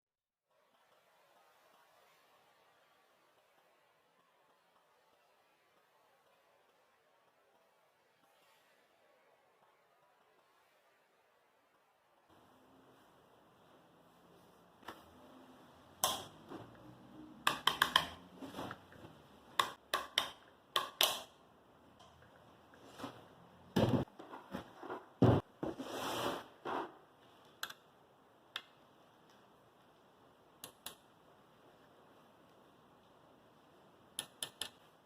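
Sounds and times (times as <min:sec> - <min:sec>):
heavy thuds: 0:23.8 - 0:25.8.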